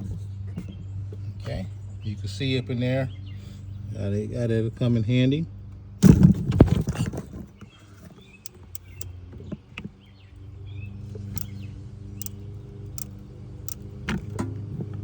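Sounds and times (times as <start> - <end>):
steady low hum: 0.0 - 15.0
ratcheting wrench clicks: 8.4 - 9.1, 11.2 - 11.6, 12.2 - 14.4.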